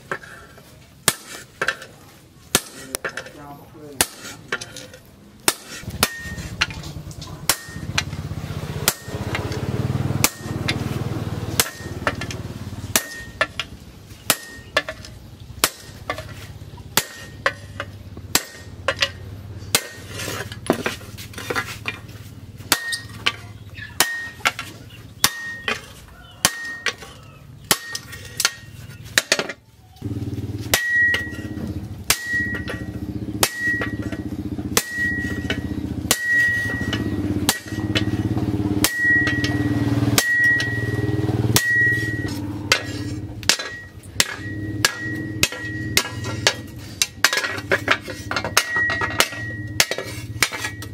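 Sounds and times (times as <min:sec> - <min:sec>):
hammer striking steel on anvil: 0:02.5 - 0:03.3, 0:04.0 - 0:04.4, 0:05.5 - 0:08.2, 0:08.8 - 0:09.6, 0:10.2 - 0:10.8, 0:11.6 - 0:13.7, 0:14.3 - 0:15.0, 0:17.0 - 0:20.1, 0:22.7 - 0:23.4, 0:24.0 - 0:25.8, 0:26.4 - 0:27.0, 0:27.7 - 0:29.5, 0:30.7 - 0:50.9
low hum: 0:30.0 - 0:50.9.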